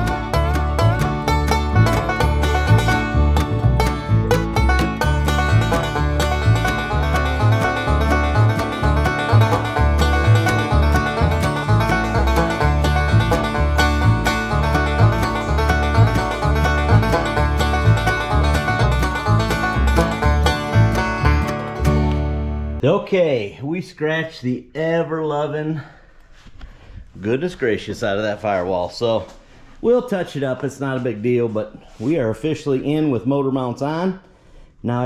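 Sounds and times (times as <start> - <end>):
upbeat banjo bluegrass music: 0.0 - 22.8.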